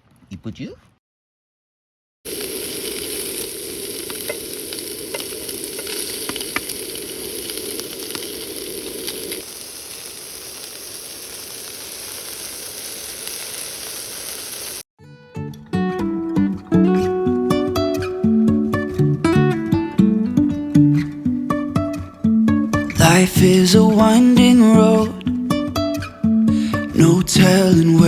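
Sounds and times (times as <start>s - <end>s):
food sizzling in a pan: 2.3s - 14.8s, 26.5s - 28.0s.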